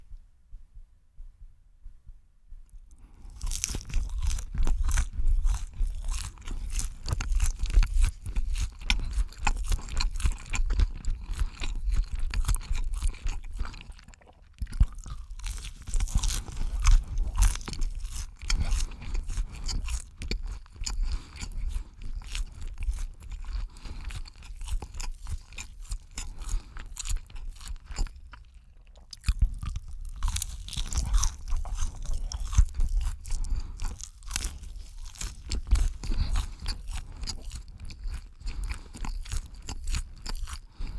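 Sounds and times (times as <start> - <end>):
crunchy chewing and biting: 2.9 - 40.9.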